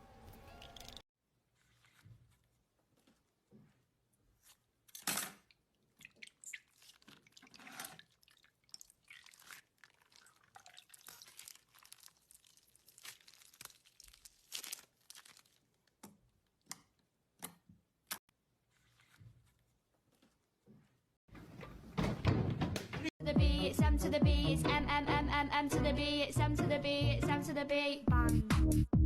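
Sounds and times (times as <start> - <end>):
wet squelching: 5.5 - 17.0
slime crackling and popping: 9.2 - 15.8.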